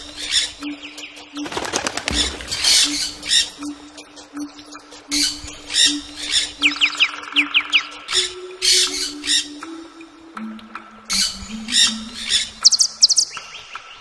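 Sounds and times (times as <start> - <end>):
birds squawking: 0.0 - 9.8, 11.1 - 13.8
descending bird chirps: 0.0 - 10.4.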